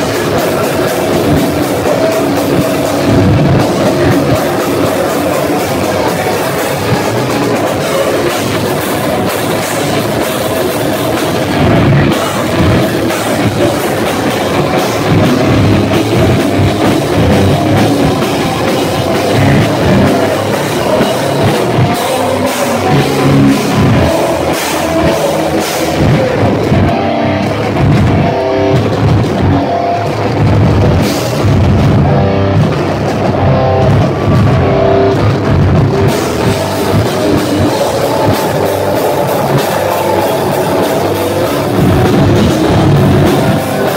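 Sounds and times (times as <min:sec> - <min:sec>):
heavy metal band playing: 0:00.0 - 0:43.9.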